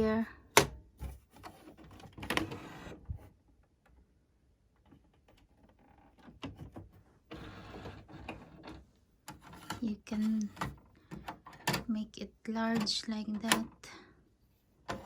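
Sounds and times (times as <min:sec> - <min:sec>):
plastic clicks and knocks: 0:10.4 - 0:11.9.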